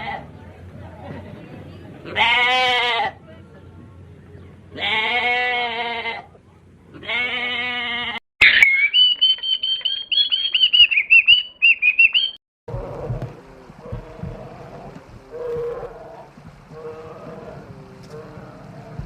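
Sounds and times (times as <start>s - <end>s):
low noisy sound: 0.0s - 7.4s, 12.7s - 19.0s
animal bleating: 4.8s - 6.3s, 7.0s - 8.2s, 13.0s - 19.0s
bird warbling whistle: 8.4s - 12.4s.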